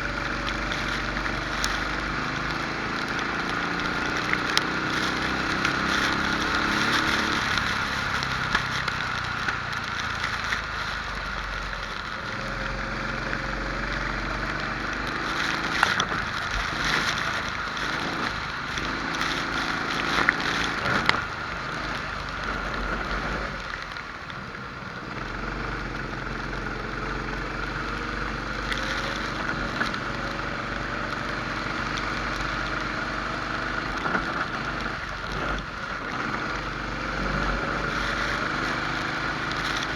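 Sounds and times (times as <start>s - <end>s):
kart engine running hard: 0.0s - 23.6s, 24.3s - 39.9s
steady rushing noise: 0.0s - 24.4s.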